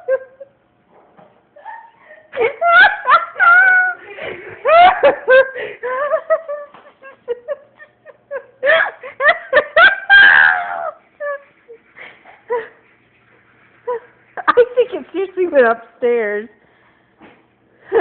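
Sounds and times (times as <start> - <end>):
girls laughing and squealing: 1.6 - 12.9, 13.8 - 15.0.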